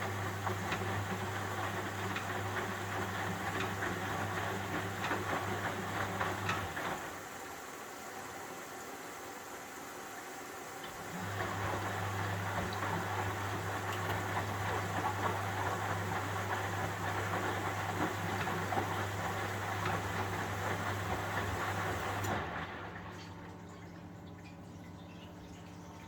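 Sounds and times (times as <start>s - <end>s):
washing machine water rushing: 0.0s - 26.0s
water trickling: 23.1s - 26.0s.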